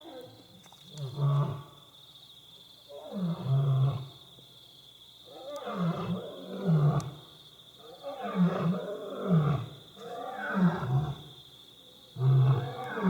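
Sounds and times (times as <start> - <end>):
lioness roaring: 12.2 - 13.0.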